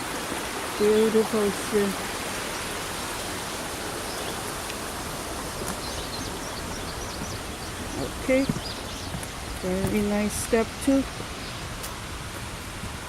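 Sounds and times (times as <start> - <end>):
stream and waterfall rushing: 0.0 - 13.0
bird chirping: 5.5 - 11.6.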